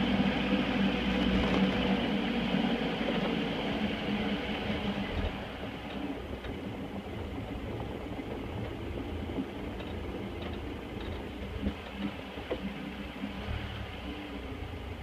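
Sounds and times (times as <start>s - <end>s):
pickup engine running: 0.0s - 15.0s
small knocks and rattles: 7.2s - 12.7s.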